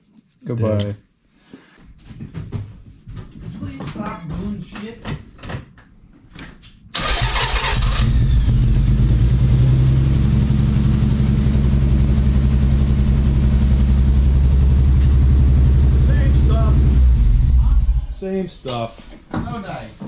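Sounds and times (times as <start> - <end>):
car engine cranking and idling: 7.0 - 18.2.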